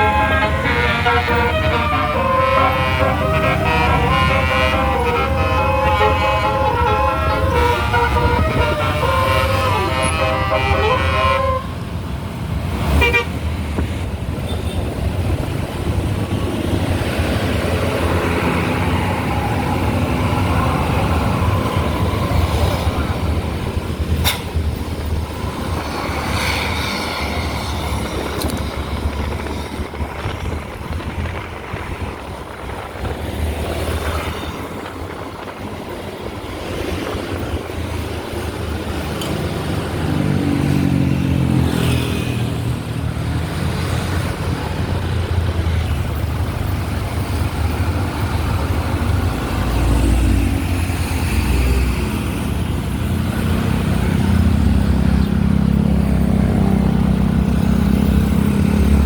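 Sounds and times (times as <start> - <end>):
deep engine note: 0.0 - 11.6
vehicles passing: 0.0 - 59.0.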